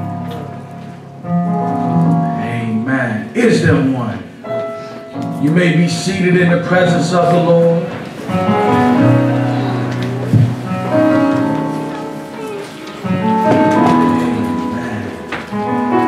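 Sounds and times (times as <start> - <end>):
church keyboard chords: 0.0 - 16.0.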